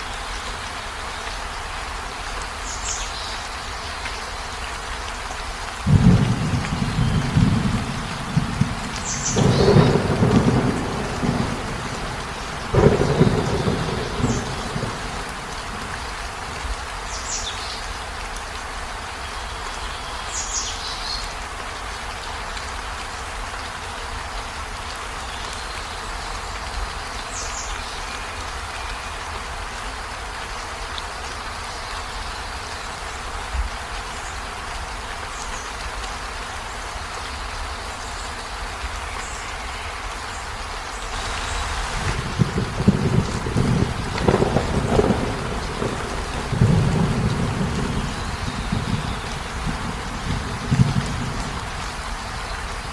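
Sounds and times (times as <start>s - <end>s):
rain falling on a river: 0.0s - 52.9s
thunder rumble: 5.9s - 16.1s, 41.2s - 52.9s.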